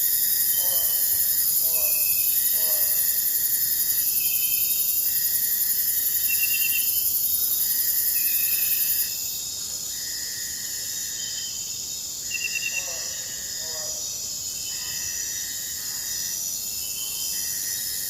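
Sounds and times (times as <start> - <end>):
high-pitched insect drone: 0.0 - 9.4.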